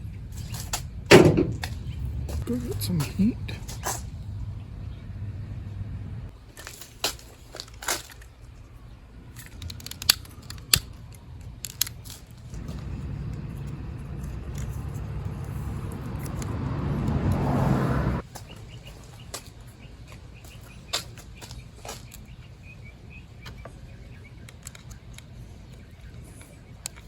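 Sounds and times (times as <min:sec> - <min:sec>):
handling clicks: 0:09.4 - 0:16.5.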